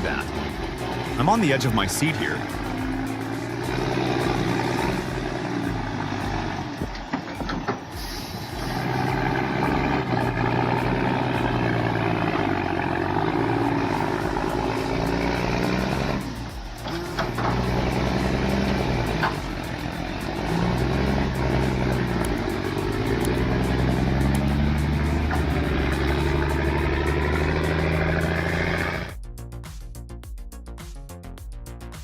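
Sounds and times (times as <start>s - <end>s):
heavy truck engine revving: 0.0s - 29.2s
short hiss: 8.0s - 9.1s.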